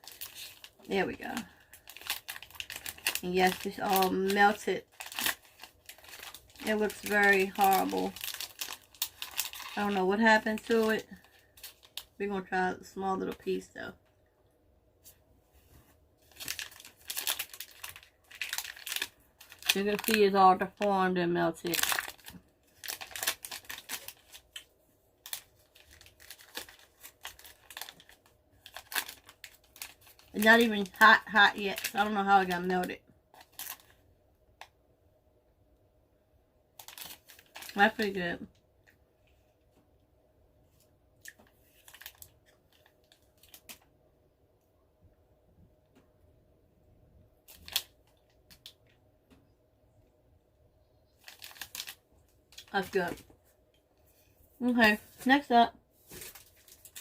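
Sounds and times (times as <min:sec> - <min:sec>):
wrapper crinkling: 0:00.0 - 0:12.2, 0:16.2 - 0:20.9, 0:21.6 - 0:34.0, 0:36.8 - 0:38.2, 0:41.4 - 0:43.8, 0:47.4 - 0:48.8, 0:51.1 - 0:53.3, 0:54.6 - 0:57.0.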